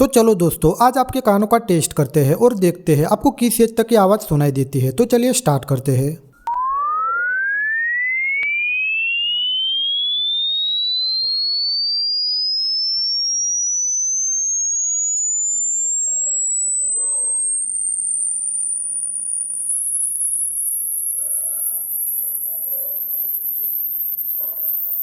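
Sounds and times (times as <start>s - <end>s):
rising test tone sweep: 6.4s - 21.2s.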